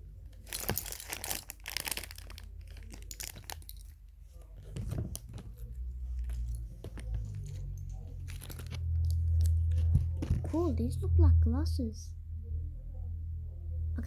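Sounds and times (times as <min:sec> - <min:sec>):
plastic bags tearing and crinkling: 0:00.3 - 0:03.9, 0:08.2 - 0:10.2.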